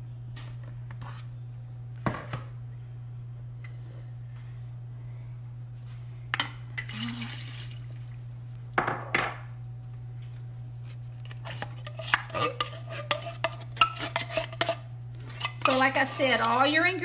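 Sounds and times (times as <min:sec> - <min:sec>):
spoon scraping bowl: 0:11.2 - 0:17.0.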